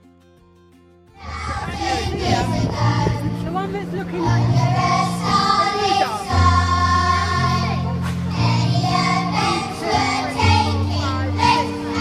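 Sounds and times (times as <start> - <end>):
amplified instrumental accompaniment: 0.1 - 12.0
children's choir singing: 1.2 - 3.2, 4.1 - 12.0
bass line: 1.2 - 5.6.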